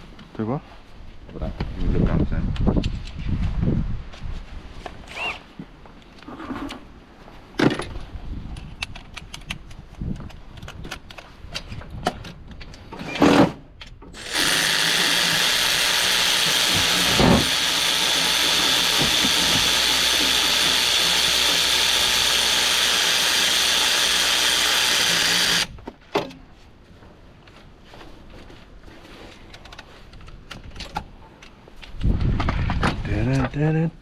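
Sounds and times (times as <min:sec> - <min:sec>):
cordless power tool running: 0:14.2 - 0:25.8.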